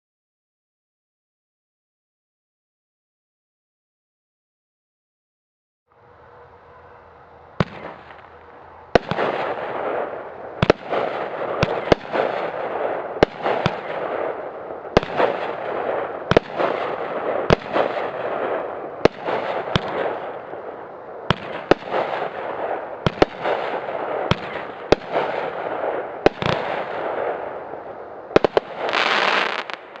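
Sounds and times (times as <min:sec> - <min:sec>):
firework bangs: 0:07.6 - 0:30.0
firework crackling: 0:07.6 - 0:30.0
firework hiss: 0:28.3 - 0:30.0.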